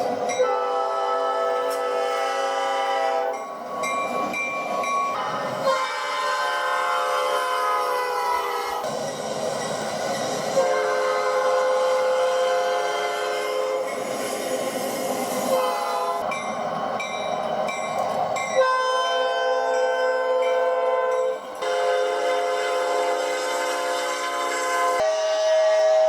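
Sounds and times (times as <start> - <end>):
train rumbling: 0.0 - 26.0
locomotive air horn chords: 0.4 - 3.4, 5.2 - 8.8, 10.5 - 13.8, 15.5 - 16.2, 18.6 - 19.7, 20.3 - 26.0.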